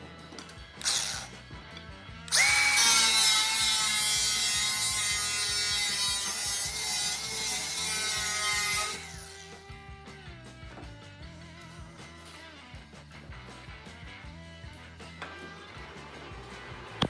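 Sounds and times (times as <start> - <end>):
background music: 0.0 - 17.0
power grinder on sheet steel: 0.8 - 1.4, 2.3 - 9.7.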